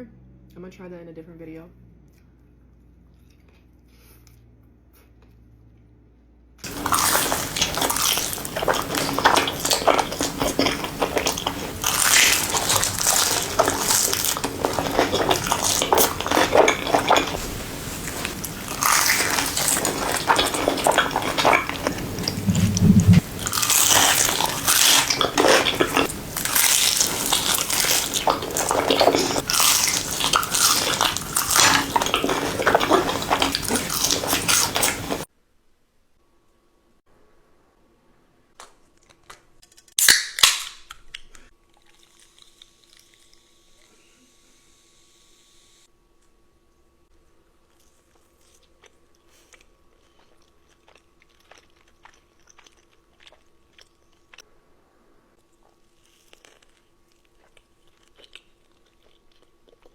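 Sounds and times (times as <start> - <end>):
close-miked biting and chewing: 6.6 - 35.3, 38.6 - 43.4, 47.6 - 54.4, 55.4 - 59.9
short low hum: 21.9 - 23.5.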